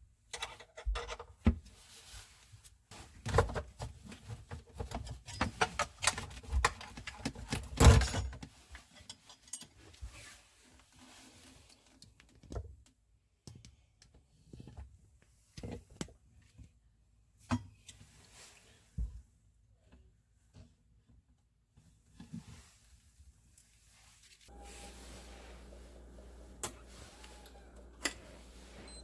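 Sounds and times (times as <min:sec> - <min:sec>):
tools and metal parts clinking: 0:04.8 - 0:09.8.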